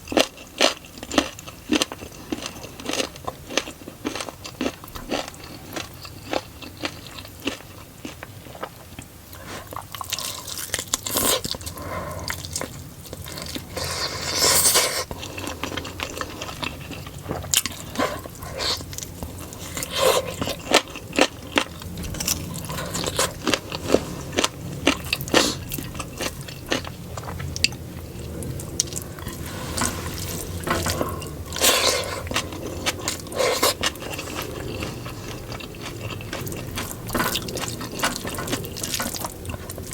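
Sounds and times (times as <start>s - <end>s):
person chewing food: 0.0s - 39.9s
scraping: 28.8s - 35.3s.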